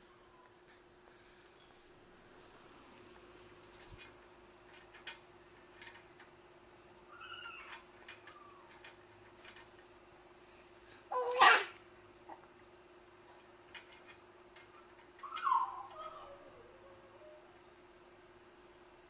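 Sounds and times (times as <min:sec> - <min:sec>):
sharp squeaky hiccup: 0:11.2 - 0:11.8, 0:15.2 - 0:16.2
faint squeak: 0:15.2 - 0:17.5.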